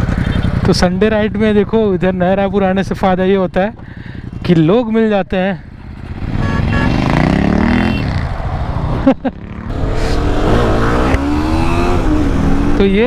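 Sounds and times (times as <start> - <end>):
motorcycle engine accelerating: 5.8 - 13.0.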